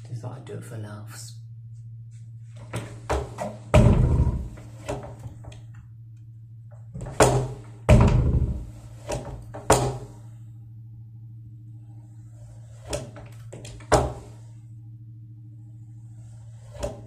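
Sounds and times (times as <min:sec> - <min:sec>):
steady low hum: 0:00.0 - 0:17.0
door banging: 0:02.6 - 0:05.5, 0:07.0 - 0:10.2, 0:12.8 - 0:14.4.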